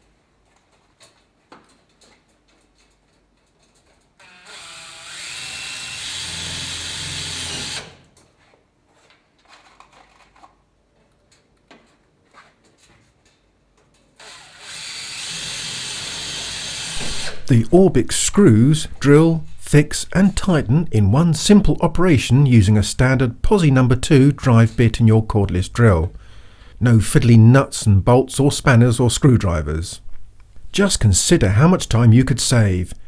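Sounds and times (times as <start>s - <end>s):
cordless drill driving screws: 4.2s - 8.2s, 14.2s - 17.5s.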